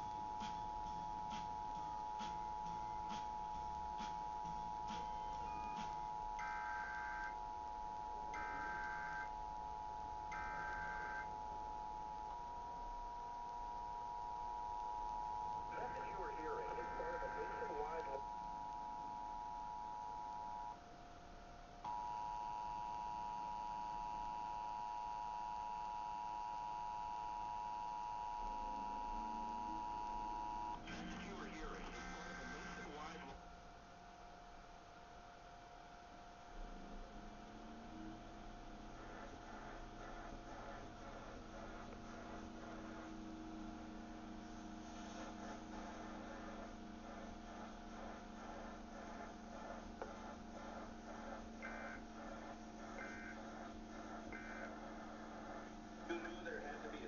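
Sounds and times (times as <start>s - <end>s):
low electrical hum: 0.0s - 57.0s
two-tone alarm tone: 0.2s - 20.8s, 21.9s - 30.8s.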